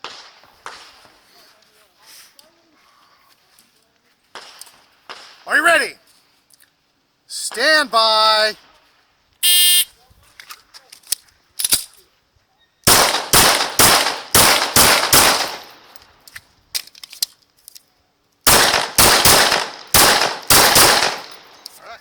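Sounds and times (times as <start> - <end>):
pistol shots: 0.0 - 1.2, 4.3 - 5.5, 12.9 - 16.0, 18.5 - 21.7
magazine reload clicks: 10.4 - 12.0, 12.9 - 17.9, 18.5 - 21.8.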